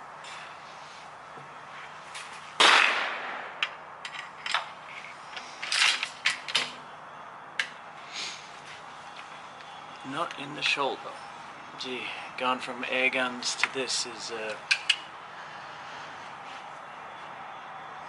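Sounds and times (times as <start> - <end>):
rifle shot: 2.6 - 3.6
rifle handling clicks and knocks: 3.6 - 6.8.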